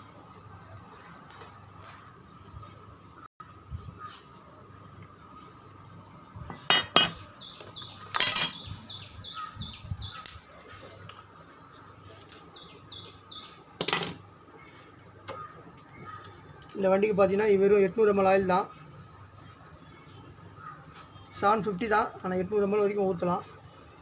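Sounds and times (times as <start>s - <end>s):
hard objects clinking: 6.7s - 7.2s, 8.1s - 8.8s
small bird chirping: 7.4s - 10.3s.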